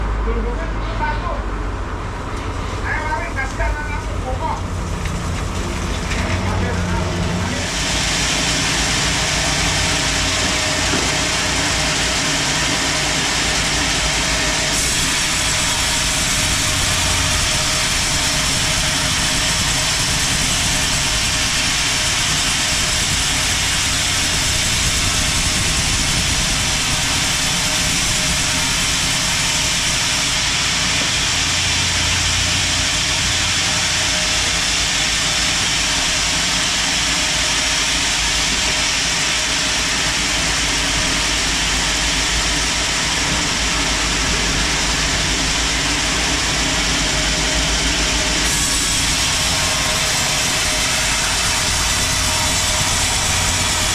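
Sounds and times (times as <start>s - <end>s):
motor hum: 1.6s - 53.9s
band saw running: 1.8s - 53.9s.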